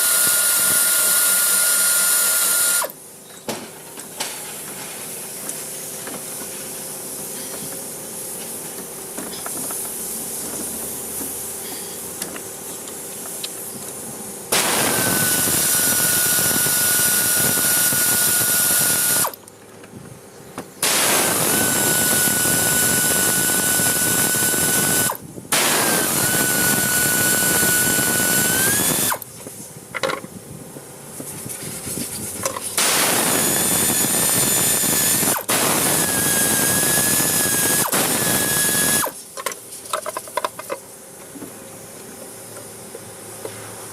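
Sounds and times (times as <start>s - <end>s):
power tool motor whine: 0.0s - 3.0s, 14.5s - 19.4s, 20.8s - 29.2s, 32.8s - 39.2s
workshop noise: 0.0s - 43.9s.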